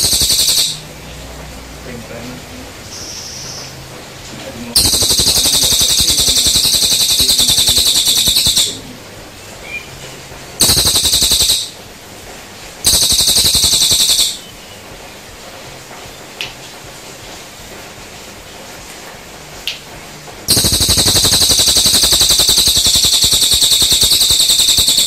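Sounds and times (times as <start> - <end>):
songbird buzzing trills: 20.5 - 25.0.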